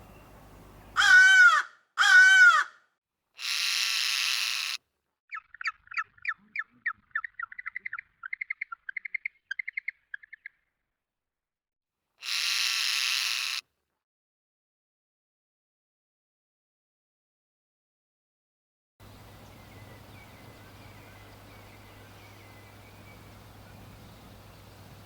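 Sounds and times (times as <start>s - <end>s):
birds calling: 0.0s - 2.7s, 19.0s - 25.0s
harsh raspy bird call: 1.0s - 2.8s, 3.4s - 9.9s, 12.2s - 13.6s.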